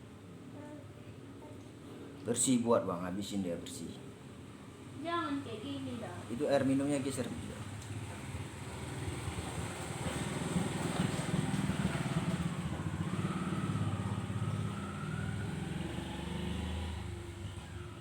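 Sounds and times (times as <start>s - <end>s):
vehicle engine passing: 7.0s - 18.0s.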